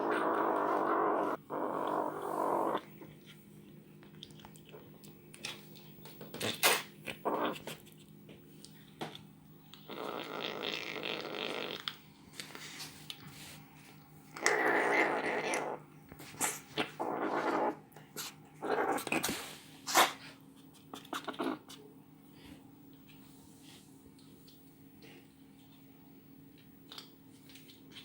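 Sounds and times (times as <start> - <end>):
kitten growling while eating: 0.0 - 3.4, 4.1 - 8.0, 9.8 - 12.0, 14.3 - 21.8.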